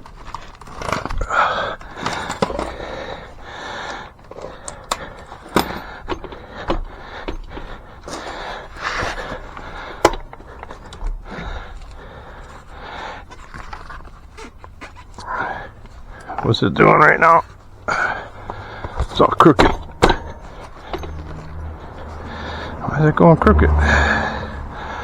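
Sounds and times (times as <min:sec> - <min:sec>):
scrapes and rustling: 0:00.0 - 0:03.4, 0:05.2 - 0:16.6, 0:17.3 - 0:22.8
sharp metal clicks and knocks: 0:03.9 - 0:11.2, 0:18.4 - 0:22.8.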